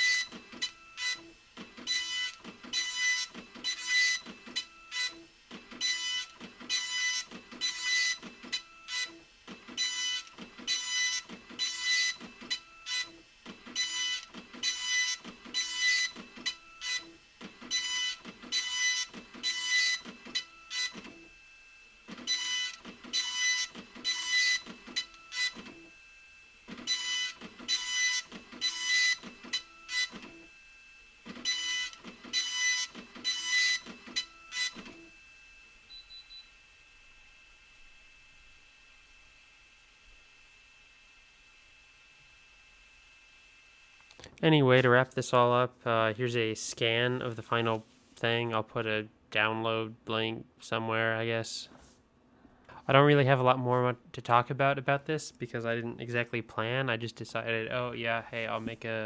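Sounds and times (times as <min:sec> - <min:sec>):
dot-matrix printer head buzzing: 0:00.0 - 0:25.9, 0:26.6 - 0:30.4, 0:31.2 - 0:35.1.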